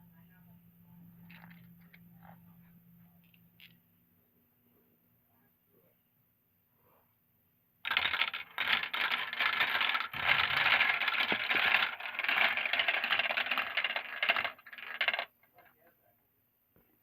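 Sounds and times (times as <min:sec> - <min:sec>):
marbles rattling down a marble run: 0:07.9 - 0:15.7.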